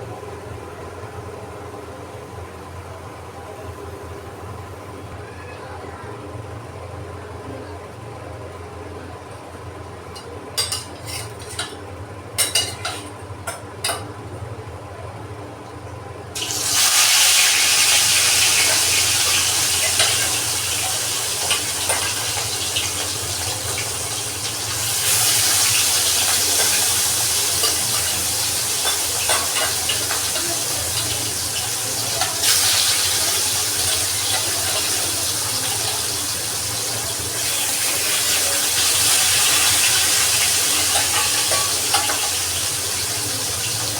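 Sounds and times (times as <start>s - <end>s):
food frying in hot oil: 10.1s - 14.2s, 15.7s - 43.9s.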